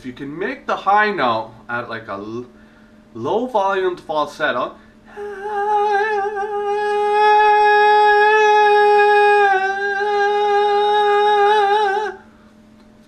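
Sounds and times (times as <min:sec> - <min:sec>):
man singing falsetto note: 0:05.1 - 0:12.2.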